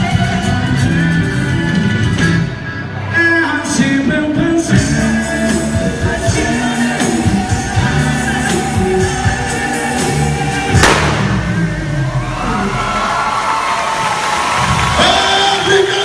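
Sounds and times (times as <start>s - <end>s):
folk dance music with singing: 0.0s - 12.1s.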